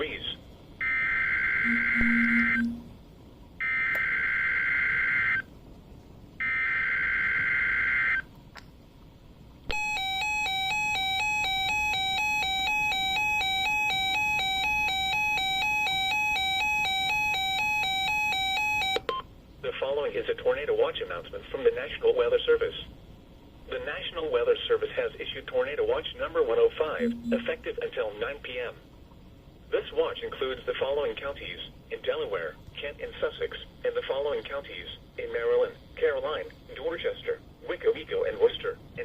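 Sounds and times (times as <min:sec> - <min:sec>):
electronic attention tone: 0:01.6 - 0:02.9, 0:27.0 - 0:27.6.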